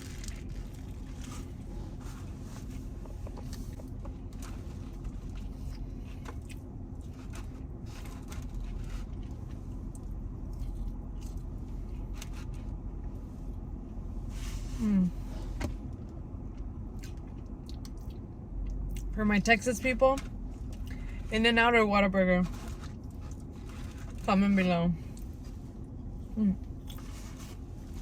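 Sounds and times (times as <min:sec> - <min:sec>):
car engine rumble inside car: 0:00.0 - 0:28.0.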